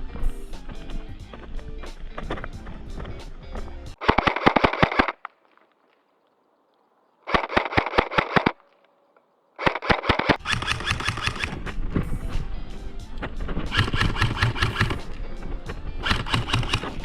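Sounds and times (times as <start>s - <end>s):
airsoft gun automatic bursts: 4.0s - 5.3s, 7.3s - 8.7s, 9.6s - 11.7s, 13.7s - 15.2s, 16.0s - 17.0s.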